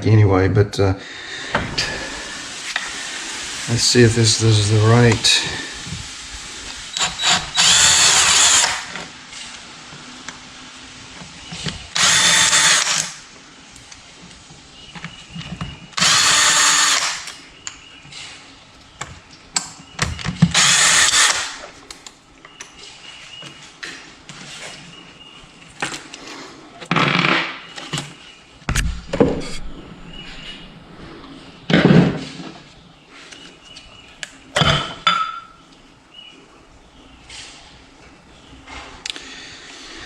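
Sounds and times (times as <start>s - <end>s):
power driver spinning bolts: 6.9s - 9.0s, 12.0s - 13.2s.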